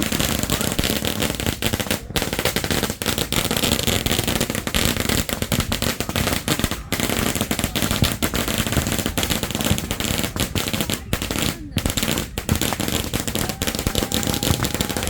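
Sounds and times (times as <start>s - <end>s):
firecrackers going off: 0.0s - 15.0s.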